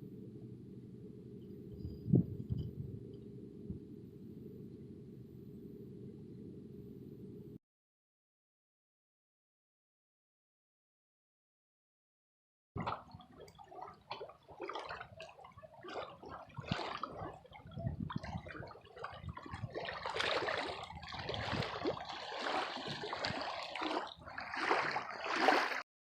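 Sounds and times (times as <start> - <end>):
river water gurgling and splashing: 12.8 - 25.8.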